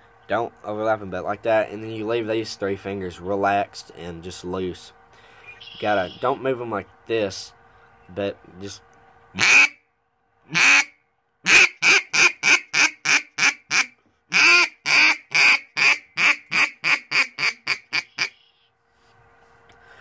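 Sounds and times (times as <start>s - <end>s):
duck call quacks: 9.4s - 9.8s, 10.5s - 18.5s.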